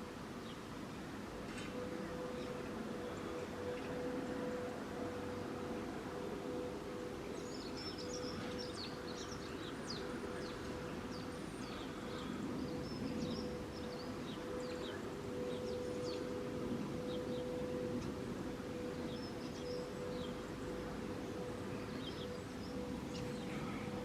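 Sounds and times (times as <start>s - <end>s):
outdoor background noise: 0.0s - 24.0s.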